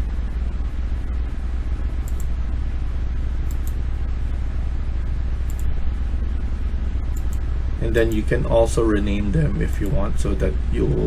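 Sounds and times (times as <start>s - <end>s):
electrical hum and hiss: 0.0s - 11.0s
computer mouse clicks: 2.0s - 2.3s, 3.5s - 3.8s, 5.5s - 5.7s, 7.1s - 7.4s.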